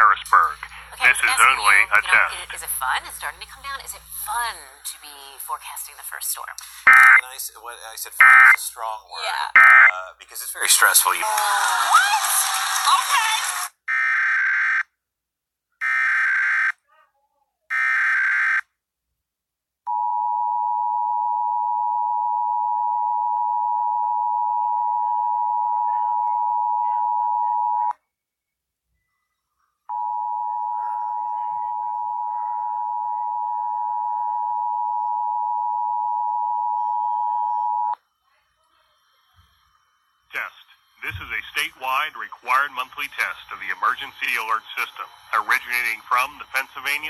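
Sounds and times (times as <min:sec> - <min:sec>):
harsh two-tone attention signal: 0:06.9 - 0:07.3, 0:08.2 - 0:08.6.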